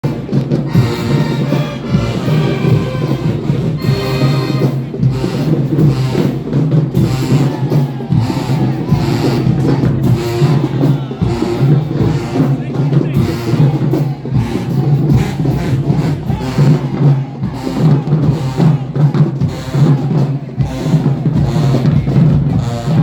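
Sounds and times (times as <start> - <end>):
drums beating: 0.0 - 23.0
marching band playing: 0.0 - 23.0.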